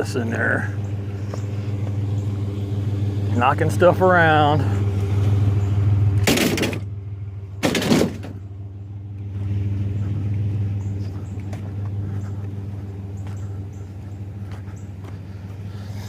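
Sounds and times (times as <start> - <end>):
pickup truck engine idling: 0.0 - 16.0
loud metal crashes: 6.2 - 6.9, 7.6 - 8.4.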